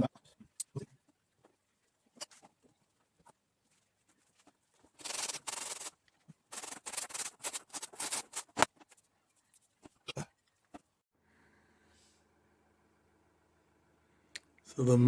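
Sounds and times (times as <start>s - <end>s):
rubbing strokes on a surface: 4.2s - 5.9s, 6.5s - 9.8s.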